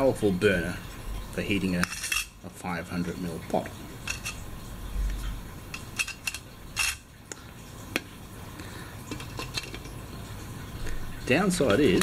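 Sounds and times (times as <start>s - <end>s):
metal stove parts clinking: 1.8s - 2.4s, 4.0s - 4.4s, 5.7s - 7.0s.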